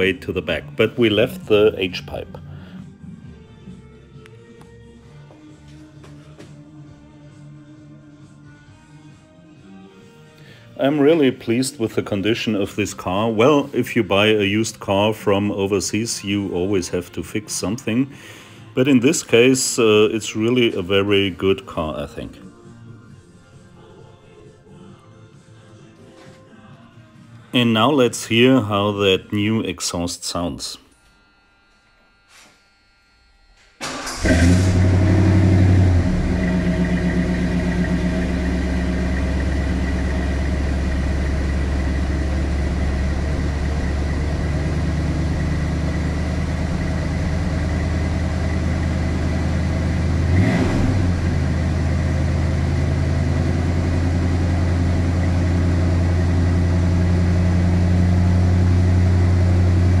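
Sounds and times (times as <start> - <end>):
car engine starting and idling: 33.8 - 60.0.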